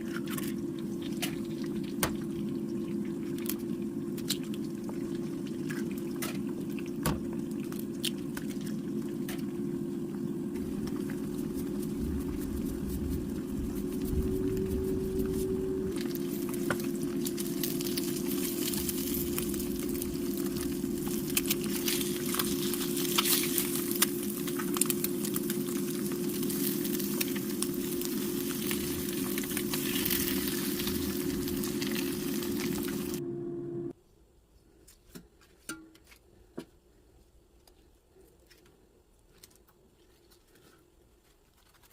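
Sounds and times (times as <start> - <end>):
constant low hum: 0.0 - 41.9
food sizzling in a pan: 16.1 - 33.2.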